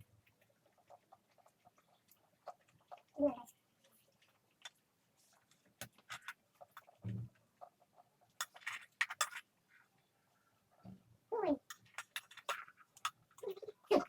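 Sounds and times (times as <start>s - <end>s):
wet chewing smacks and clicks: 0.2s - 4.8s.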